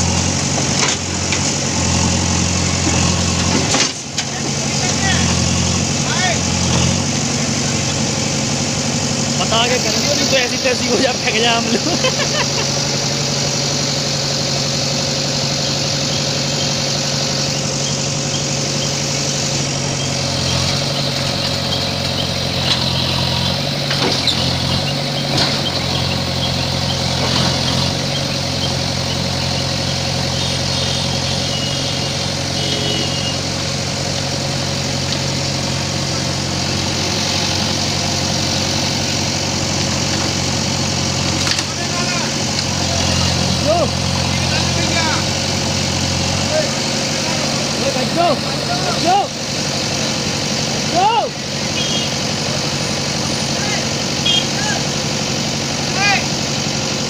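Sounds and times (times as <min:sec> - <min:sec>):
diesel engine running: 0:00.0 - 0:57.0
knocks and clatters: 0:00.5 - 0:01.6, 0:02.8 - 0:04.4, 0:23.8 - 0:24.5, 0:25.3 - 0:25.8.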